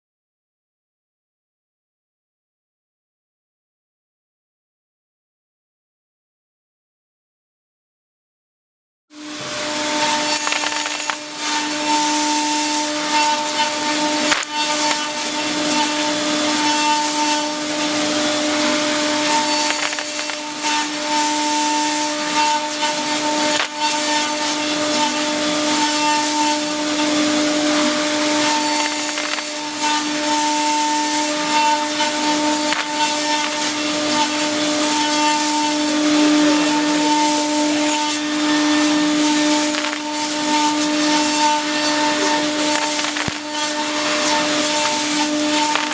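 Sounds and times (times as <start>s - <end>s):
spinning tool whine: 9.2s - 45.9s
cutting hiss: 9.4s - 45.9s.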